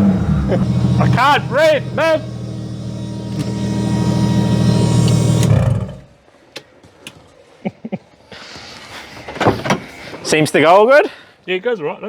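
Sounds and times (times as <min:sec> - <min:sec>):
car engine at high revs: 0:00.0 - 0:06.1.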